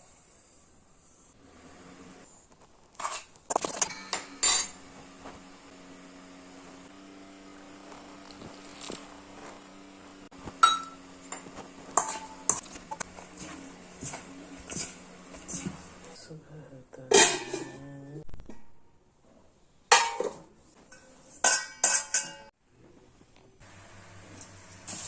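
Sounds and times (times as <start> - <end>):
utensils clinking against dishes: 3.0 - 4.9, 10.6 - 15.7, 17.1 - 17.9, 19.9 - 22.5.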